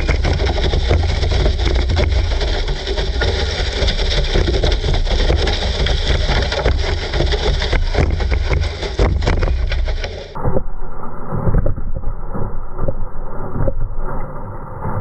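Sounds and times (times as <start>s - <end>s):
rattling knocks: 0.0s - 10.4s
toy car rumbling over grass: 0.0s - 10.4s.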